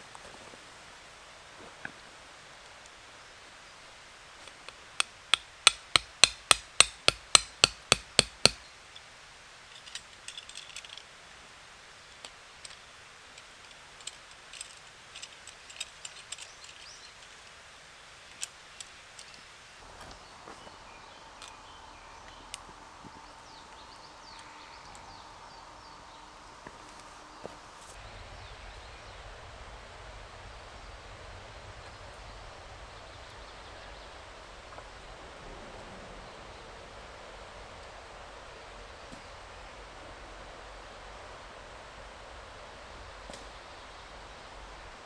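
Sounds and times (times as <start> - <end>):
sharp knocks chopping wood: 5.0 - 8.6.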